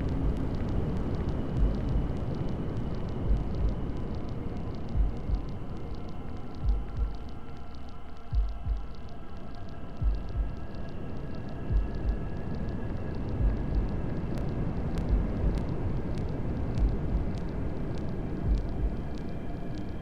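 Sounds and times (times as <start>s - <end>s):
heartbeat thump: 1.6s - 2.2s, 3.2s - 3.8s, 4.9s - 5.6s, 6.6s - 7.2s, 8.3s - 9.0s, 10.0s - 10.6s, 11.7s - 12.3s, 13.4s - 14.0s, 15.0s - 15.6s, 16.8s - 17.4s, 18.4s - 19.0s.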